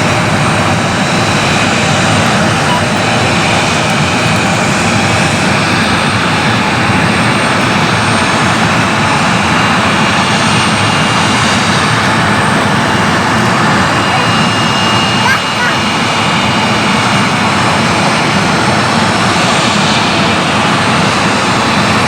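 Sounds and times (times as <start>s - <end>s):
high whining tones: 0.0s - 9.4s
jet engines running: 0.0s - 22.0s.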